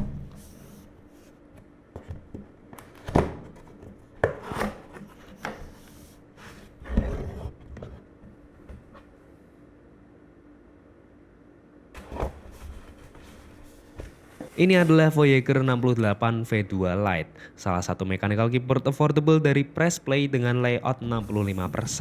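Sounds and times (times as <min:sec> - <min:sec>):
packaging rubbing and sliding: 0:12.0 - 0:15.2, 0:21.1 - 0:22.0.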